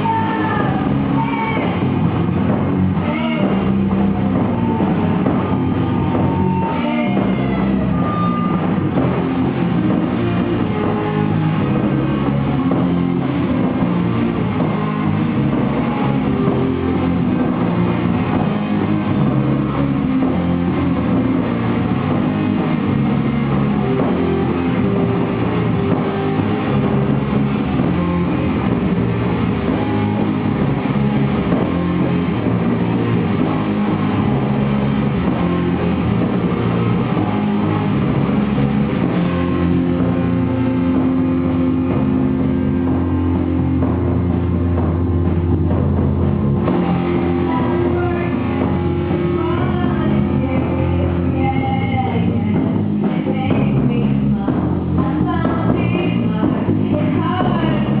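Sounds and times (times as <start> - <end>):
rock music: 0.0 - 58.0.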